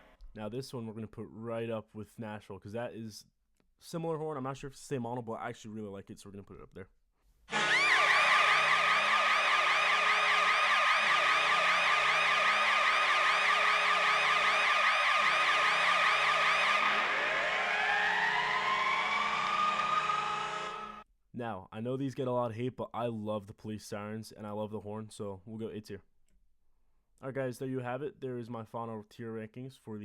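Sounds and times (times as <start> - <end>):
police siren sweeping up and down: 7.5 - 21.0
siren winding up in pitch: 7.5 - 21.0.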